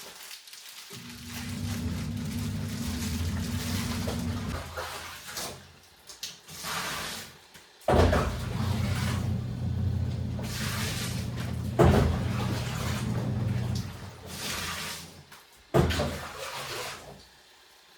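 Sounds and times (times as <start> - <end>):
washing machine motor running: 0.9 - 5.1, 7.9 - 14.9.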